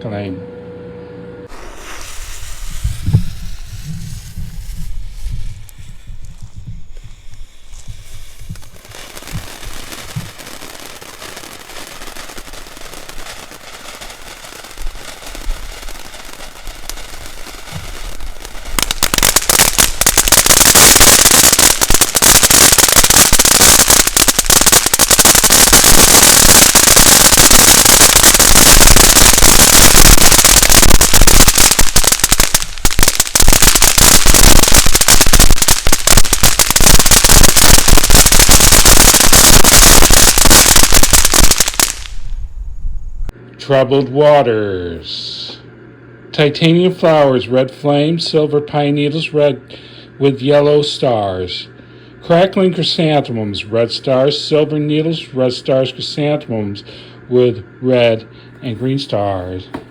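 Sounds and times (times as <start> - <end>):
firework spray hiss: 1.5 - 42.5
firework fountain crackling: 1.5 - 43.2.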